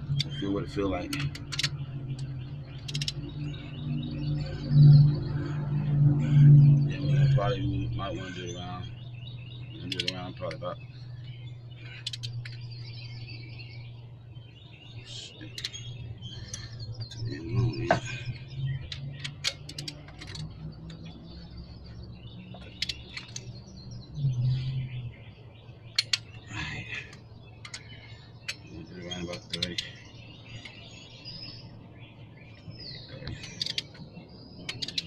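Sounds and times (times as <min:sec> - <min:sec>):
birds chirping: 0:00.0 - 0:35.0
steady low hum: 0:00.0 - 0:35.0
torque wrench ratcheting clicks: 0:02.8 - 0:03.2.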